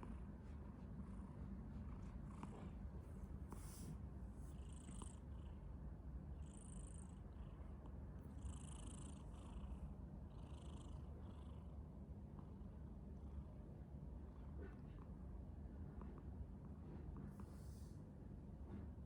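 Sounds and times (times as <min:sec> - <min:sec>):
soft breathy noises: 0:00.4 - 0:05.6, 0:17.2 - 0:18.1.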